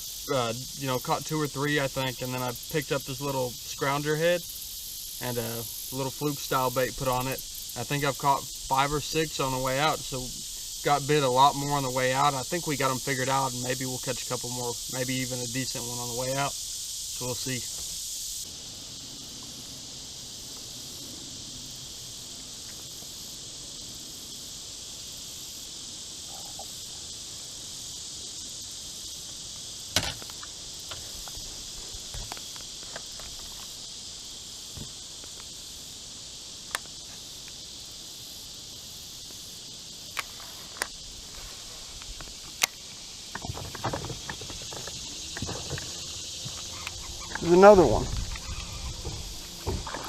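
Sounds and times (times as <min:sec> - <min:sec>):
high-pitched insect chorus: 0:00.0 - 0:50.0
sharp clicks or knocks: 0:29.9 - 0:30.5.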